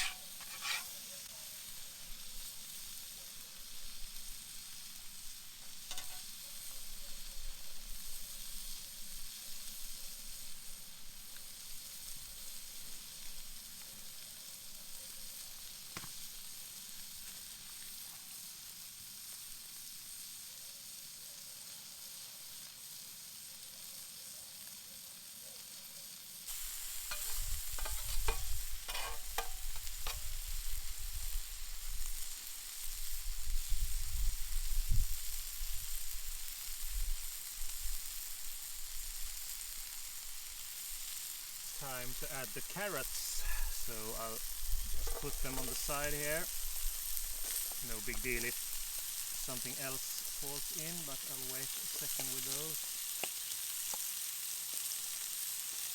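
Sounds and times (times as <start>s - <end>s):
utensil clicking against pan: 0.0s - 0.9s, 5.9s - 6.3s, 27.1s - 30.3s
chicken sizzling in a pan: 0.0s - 55.9s.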